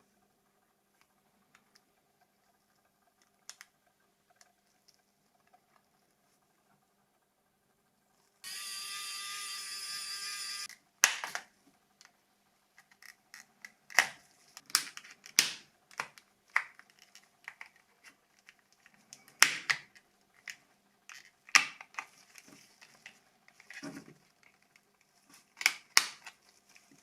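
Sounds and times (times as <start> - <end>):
clicks and snaps of plastic parts: 12.8 - 24.9, 25.5 - 26.4.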